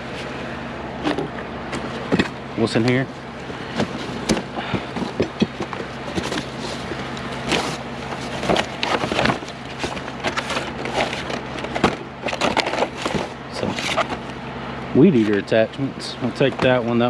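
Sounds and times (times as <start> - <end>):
steady low hum: 0.0 - 17.0
plastic and metal items clattering: 1.0 - 14.3.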